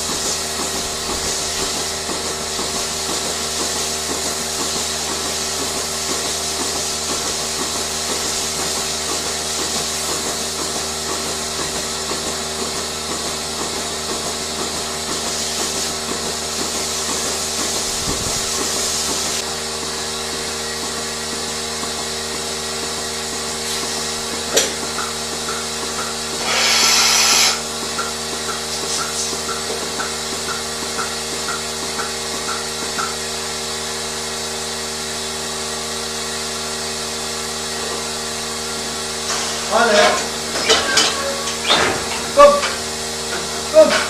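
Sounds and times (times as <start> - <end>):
machinery drone: 26.0 - 27.7, 39.3 - 44.0
loud burst of hiss: 26.3 - 27.6, 39.2 - 40.6.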